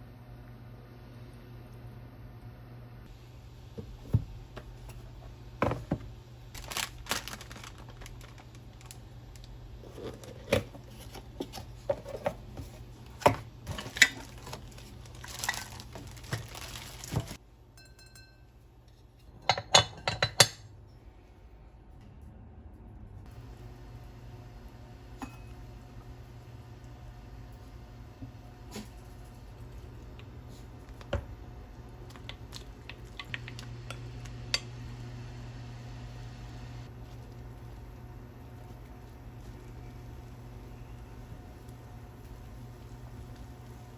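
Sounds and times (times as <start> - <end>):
dishes and pots clinking: 17.2 - 20.7, 25.2 - 25.6.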